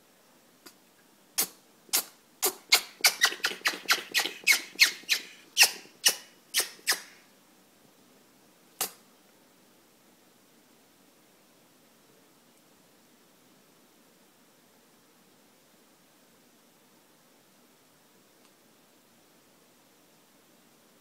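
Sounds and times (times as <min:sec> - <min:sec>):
parrot sneezing: 0:01.4 - 0:07.2.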